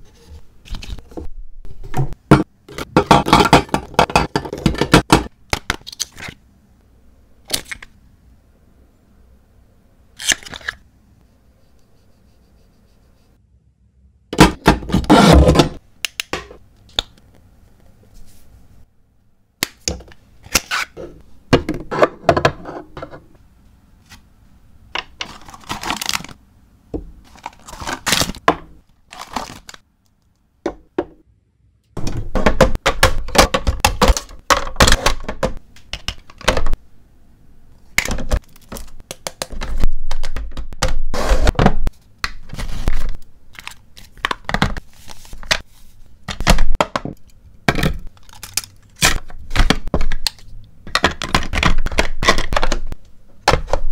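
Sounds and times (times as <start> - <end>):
items knocking as set down: 1.8 - 5.3, 32.0 - 35.6
plastic crinkling and tearing: 29.1 - 29.8.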